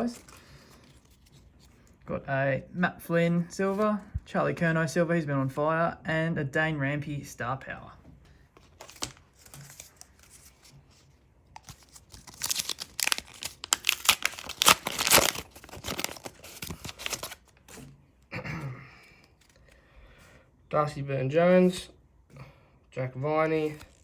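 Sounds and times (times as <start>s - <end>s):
wrapper tearing and crinkling: 11.6s - 17.5s.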